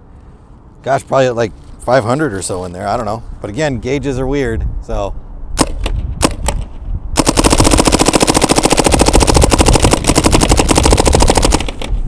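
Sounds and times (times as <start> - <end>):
paintball marker firing: 5.6 - 12.0.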